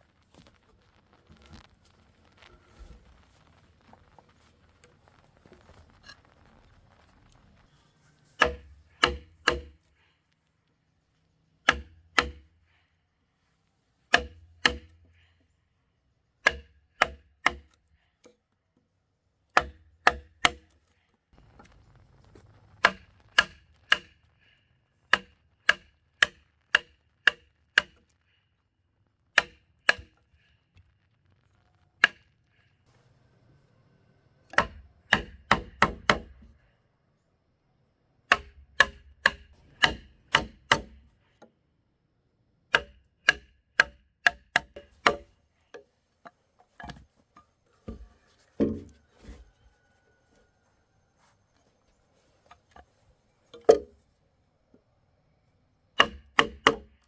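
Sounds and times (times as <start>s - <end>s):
hand tool striking wood: 8.4s - 9.8s, 11.7s - 12.5s, 14.1s - 15.0s, 16.4s - 17.8s, 19.5s - 20.8s, 22.8s - 24.2s, 29.4s - 30.2s, 34.5s - 36.5s, 38.3s - 41.1s, 42.7s - 45.9s, 46.7s - 49.5s, 53.5s - 54.0s, 56.0s - 57.0s.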